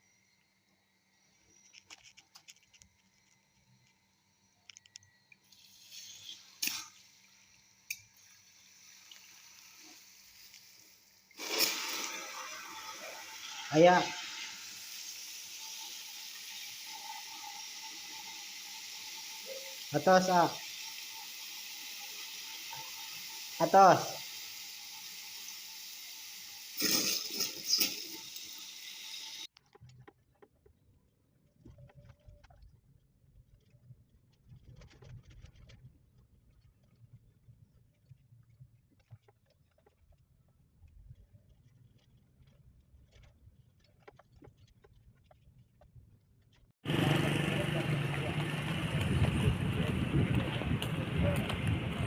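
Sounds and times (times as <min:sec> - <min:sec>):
water running with steady hiss: 0:05.4 - 0:29.5
water rushing: 0:46.9 - 0:52.0.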